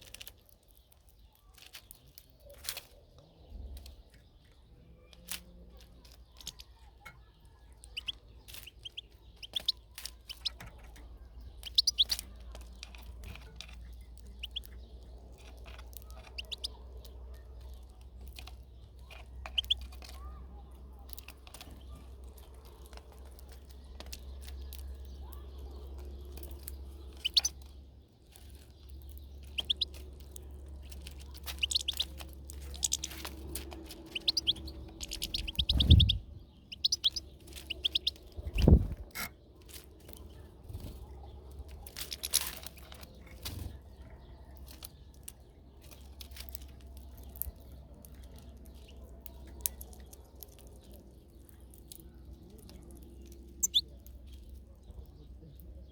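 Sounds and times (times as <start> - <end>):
finches twittering: 11.7 - 12.1, 27.2 - 27.6, 29.4 - 30.0, 31.4 - 39.0, 53.6 - 53.9.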